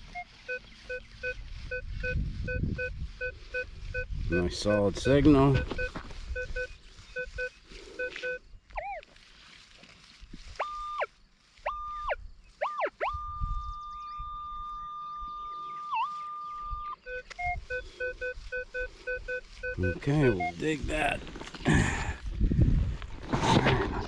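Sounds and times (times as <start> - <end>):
metal detector beeps and tones: 0.0 - 9.1, 10.5 - 21.2.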